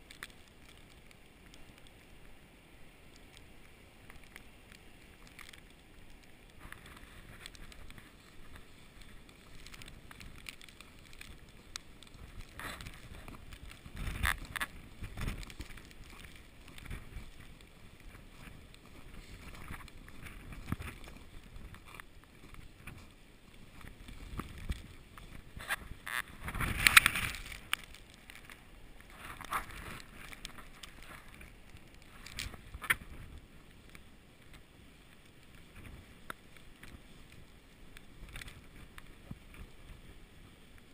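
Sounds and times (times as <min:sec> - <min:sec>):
faint clicks: 0:00.0 - 0:02.4, 0:03.0 - 0:40.1
wind gusting over microphone: 0:06.6 - 0:27.8.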